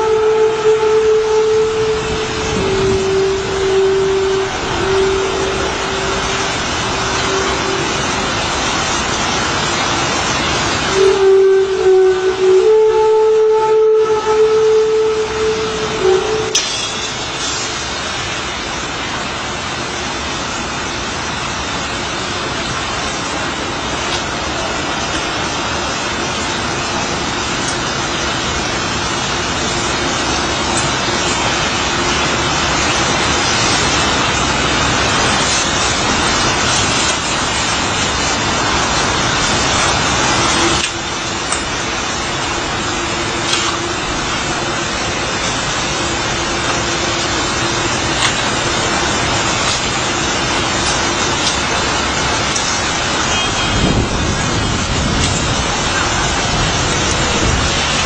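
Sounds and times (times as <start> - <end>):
faint droning tone: 0.0 - 8.4
distant traffic: 0.0 - 58.0.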